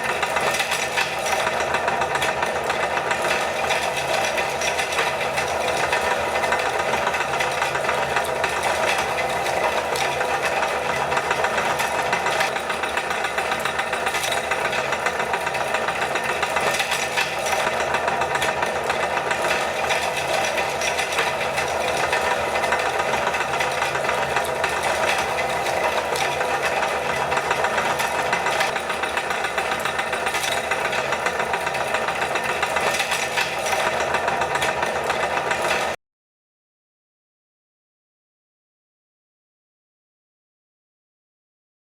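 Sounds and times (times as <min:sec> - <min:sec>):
electric meat grinder humming: 0:00.0 - 0:36.0.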